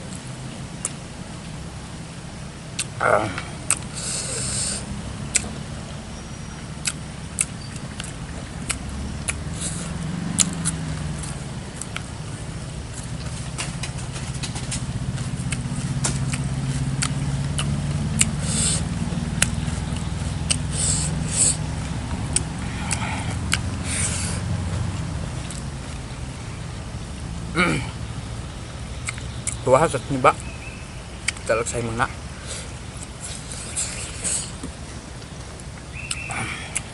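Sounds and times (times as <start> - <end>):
low engine-like hum: 0.0 - 36.9
mouth clicks while chewing: 3.7 - 5.5, 6.8 - 12.1, 15.5 - 18.8, 29.0 - 29.6, 31.2 - 31.5, 35.2 - 36.9
hissy slurps or sniffs: 3.9 - 4.9, 9.5 - 10.0, 18.3 - 19.0, 20.2 - 21.7, 32.4 - 34.6.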